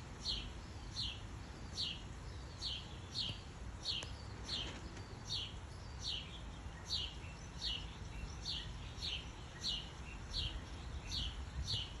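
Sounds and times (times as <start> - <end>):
bird chirping: 0.0 - 12.0.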